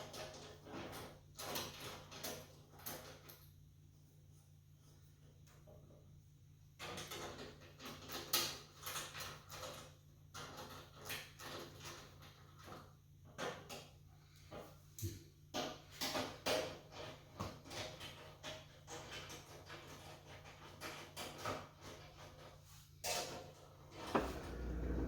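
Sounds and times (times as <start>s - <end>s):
wrench scraping and rattling metal: 24.0s - 25.0s.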